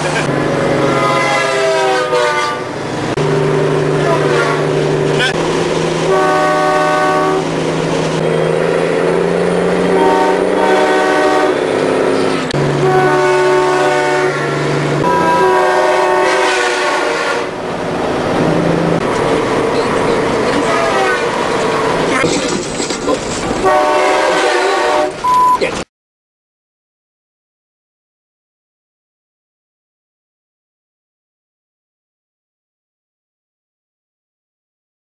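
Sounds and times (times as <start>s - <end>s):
train horn blasts: 0.7s - 5.0s, 6.0s - 7.6s, 9.6s - 17.6s, 20.6s - 21.5s, 23.6s - 25.3s.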